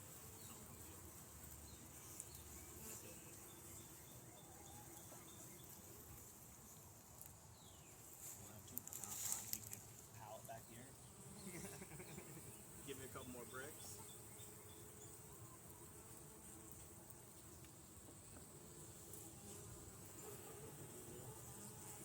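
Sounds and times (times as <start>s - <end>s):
honeybees buzzing: 0.0s - 22.0s
rustling: 8.0s - 10.2s.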